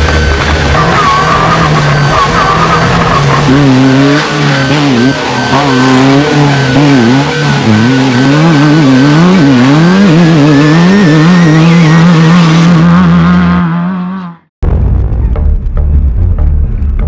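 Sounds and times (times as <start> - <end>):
race vehicle engine revving: 0.0 - 14.5.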